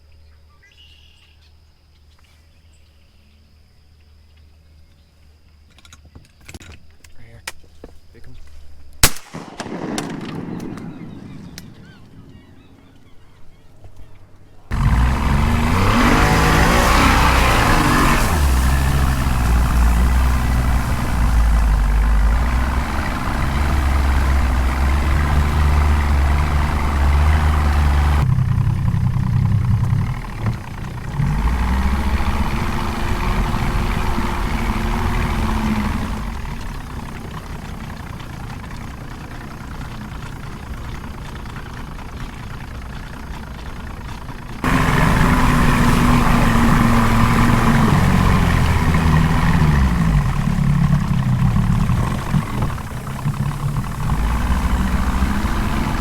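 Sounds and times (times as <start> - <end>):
motor engine running: 11.8 - 56.0.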